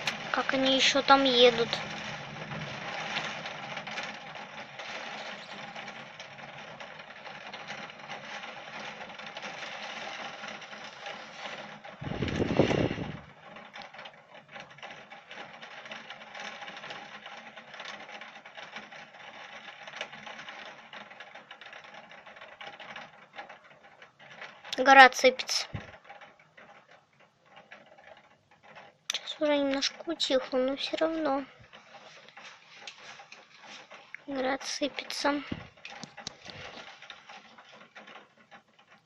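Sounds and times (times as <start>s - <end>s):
heavy rain and hail pattering: 0.0s - 26.1s.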